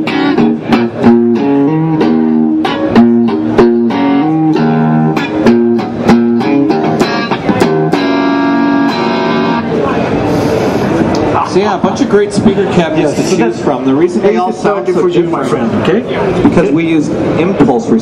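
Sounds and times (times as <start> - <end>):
electric guitar strumming chords: 0.0 - 11.4.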